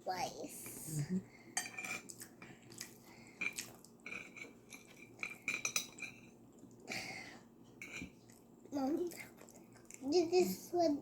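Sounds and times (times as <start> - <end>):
cutlery clinking on plates: 1.6 - 2.2, 3.4 - 6.4, 7.8 - 8.2.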